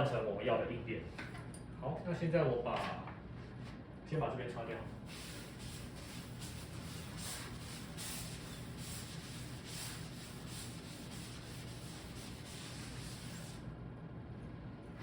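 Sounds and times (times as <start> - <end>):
eraser rubbing across board: 5.2 - 13.6.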